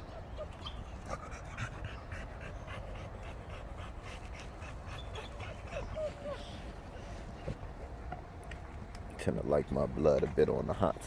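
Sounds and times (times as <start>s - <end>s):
dog panting: 0.9s - 7.6s.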